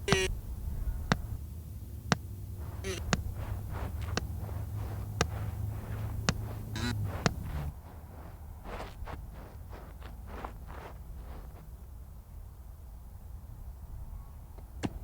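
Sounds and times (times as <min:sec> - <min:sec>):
creaking squeaks: 0:00.0 - 0:00.3, 0:02.7 - 0:05.2, 0:06.0 - 0:07.7
sharp ticks: 0:00.0 - 0:00.3, 0:02.1 - 0:08.3
steady low hum: 0:00.0 - 0:12.4
scratchy rustling: 0:00.1 - 0:00.3, 0:02.5 - 0:11.8.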